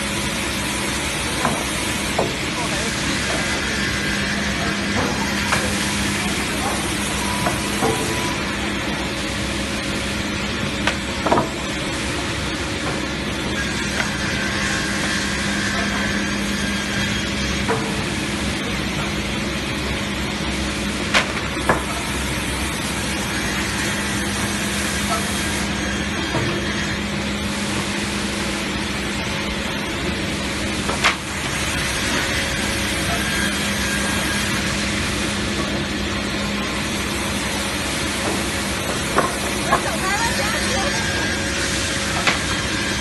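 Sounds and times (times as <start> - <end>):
edger saw running: 36.6 - 43.0.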